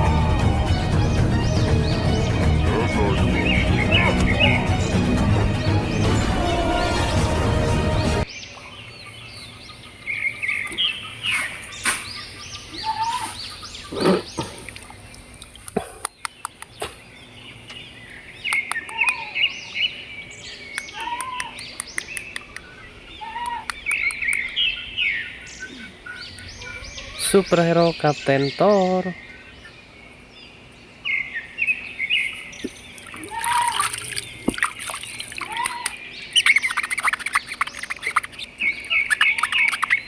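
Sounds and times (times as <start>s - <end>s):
music: 0.0s - 8.3s
birds chirping: 0.0s - 40.0s.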